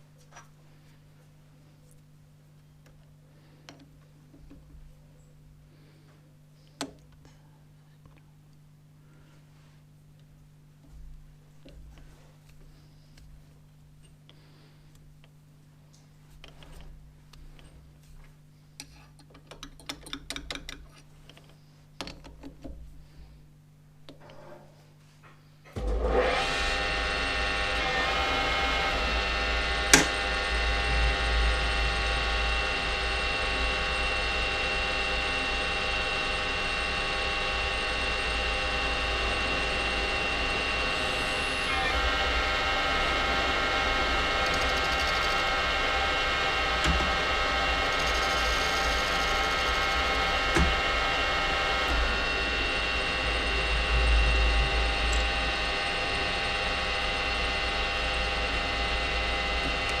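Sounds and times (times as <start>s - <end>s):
metal lathe whine: 25.8s - 60.0s.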